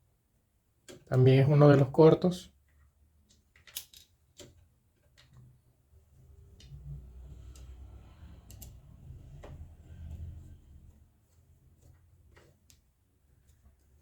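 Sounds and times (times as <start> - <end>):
low rubbing of handling: 6.2 - 12.6.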